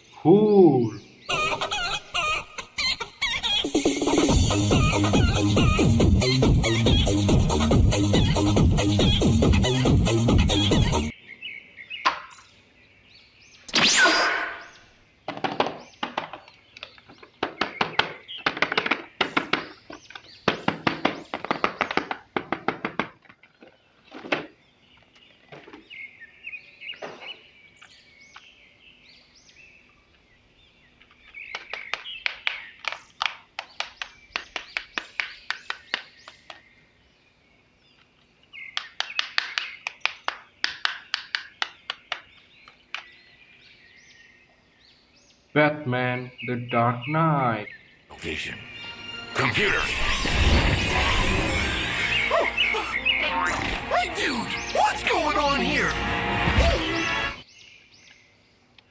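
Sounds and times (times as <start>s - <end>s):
plastic toys clicking and knocking: 15.3s - 24.5s.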